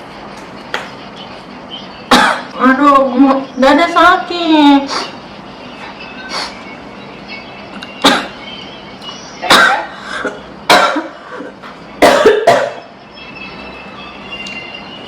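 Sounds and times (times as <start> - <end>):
woman coughing: 2.1 - 2.6, 8.0 - 8.4, 9.4 - 12.9.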